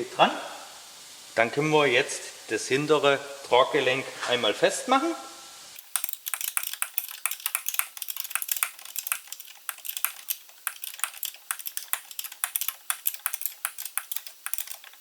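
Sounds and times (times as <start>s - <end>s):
socket ratchet clicking: 5.8s - 15.0s.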